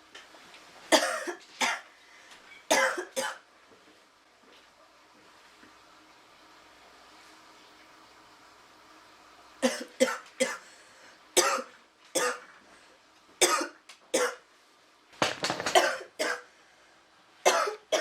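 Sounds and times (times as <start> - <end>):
woman coughing: 0.9 - 1.8, 2.7 - 3.4, 11.4 - 12.4, 13.4 - 14.4, 15.7 - 16.5, 17.5 - 18.0.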